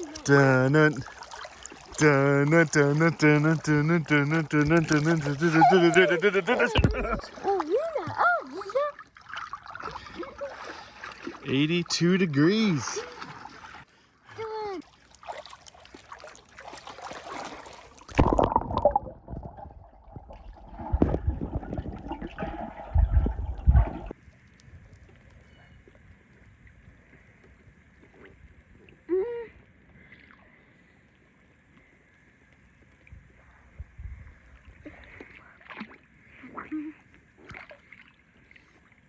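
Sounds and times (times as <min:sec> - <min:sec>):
water splashing in a pool: 0:00.0 - 0:39.0
short high vocal sound: 0:02.0 - 0:07.2.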